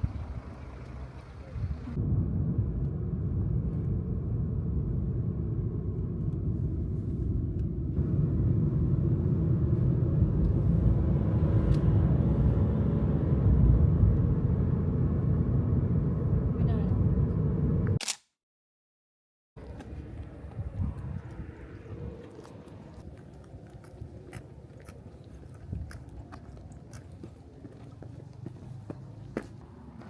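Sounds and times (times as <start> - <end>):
car engine and tyre rumble: 0.0 - 18.0, 19.6 - 30.0.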